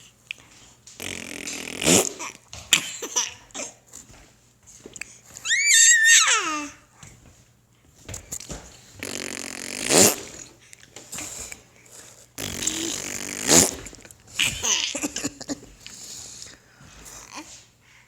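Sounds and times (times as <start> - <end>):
fart noises: 0.9 - 3.2, 8.2 - 10.6, 11.2 - 15.8.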